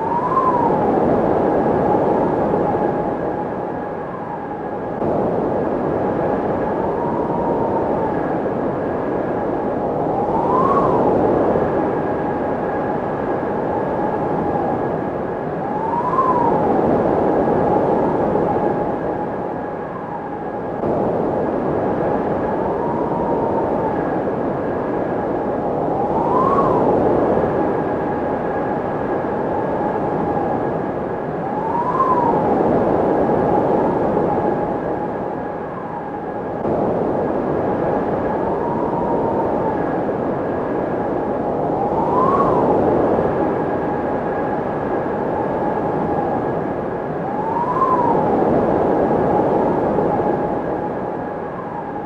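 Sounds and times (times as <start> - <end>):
faint constant whine: 0.0 - 52.0.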